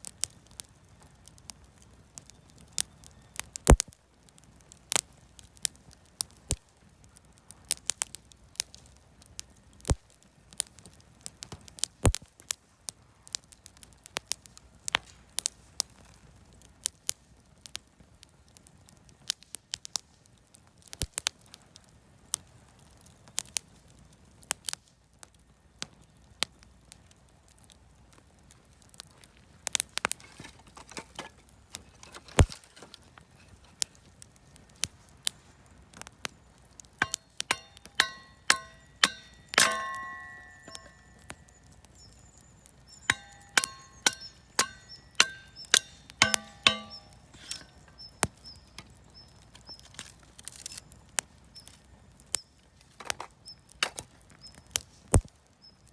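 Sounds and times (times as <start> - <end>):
sharp pops from fire: 0.0 - 12.6, 28.9 - 55.8
wood fire crackling: 0.0 - 12.8, 13.5 - 55.9
ringing metallic strikes: 37.0 - 41.5, 43.0 - 48.0.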